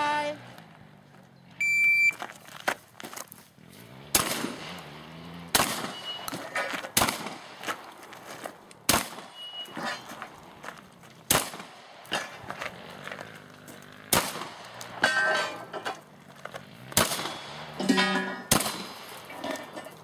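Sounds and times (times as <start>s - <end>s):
shot timer beep: 1.6s - 2.2s
shotgun shots: 4.1s - 4.8s, 5.5s - 7.7s, 8.8s - 9.5s, 11.3s - 12.0s, 14.1s - 15.0s, 16.9s - 17.8s, 18.5s - 19.3s.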